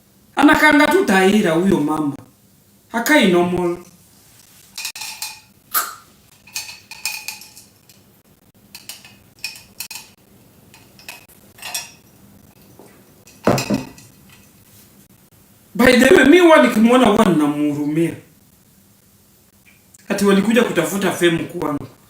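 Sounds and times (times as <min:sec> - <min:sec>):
dishes and cutlery clinking: 0:04.8 - 0:08.1, 0:08.7 - 0:12.1, 0:12.8 - 0:14.6
dishes clattering: 0:04.8 - 0:08.1, 0:08.7 - 0:10.2, 0:10.8 - 0:12.1, 0:13.3 - 0:14.6.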